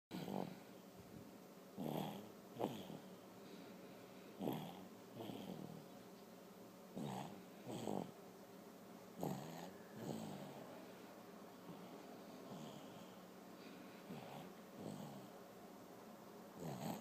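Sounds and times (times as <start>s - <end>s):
person snoring: 0.1s - 0.6s, 1.8s - 3.1s, 4.4s - 5.8s, 7.0s - 8.2s, 9.2s - 10.7s, 11.7s - 13.2s, 14.0s - 15.3s, 16.6s - 17.0s.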